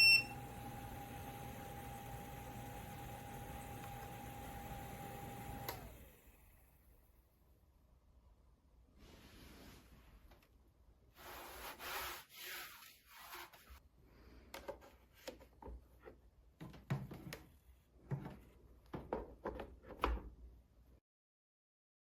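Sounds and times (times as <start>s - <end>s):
rubbing and rustling: 11.1s - 13.8s.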